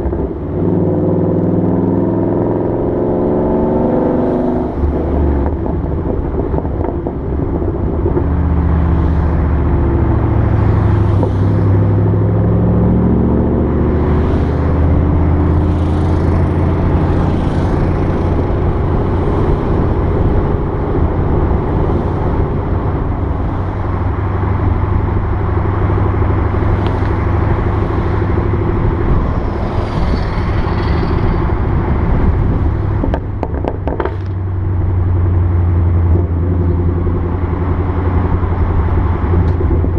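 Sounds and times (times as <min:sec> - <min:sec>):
car engine revving: 0:00.0 - 0:39.9
exhaust pops and crackles: 0:32.8 - 0:34.6, 0:38.2 - 0:39.9.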